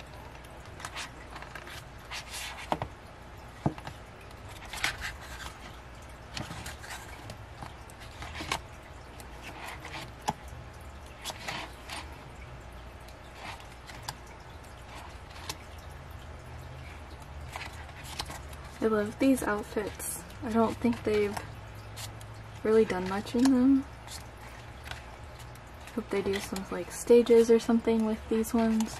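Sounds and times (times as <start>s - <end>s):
paper pages rustling: 0.0s - 2.9s, 3.6s - 8.7s, 17.5s - 21.4s, 24.1s - 26.7s.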